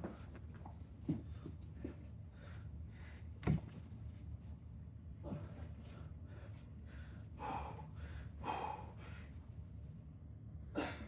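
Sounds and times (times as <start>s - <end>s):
man breathing hard: 6.3s - 9.3s.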